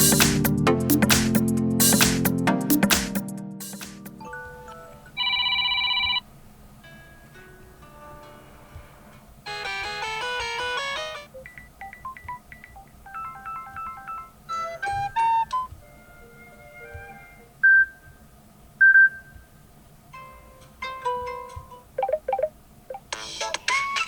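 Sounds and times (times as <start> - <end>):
phone alarm tones: 5.2 - 6.2, 9.5 - 15.7.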